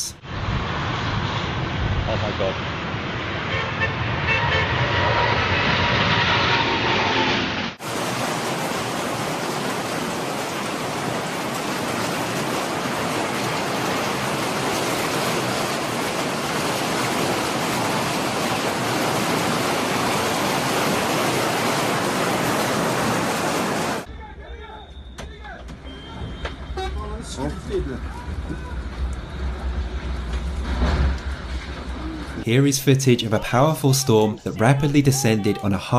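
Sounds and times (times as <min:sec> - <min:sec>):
storm wind rushing: 0:00.2 - 0:24.1.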